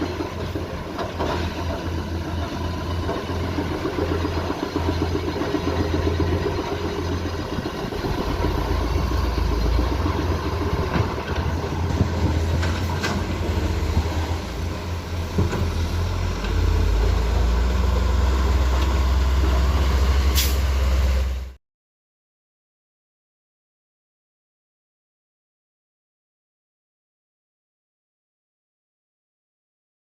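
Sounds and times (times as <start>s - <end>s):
excavator diesel engine running: 0.0s - 21.6s.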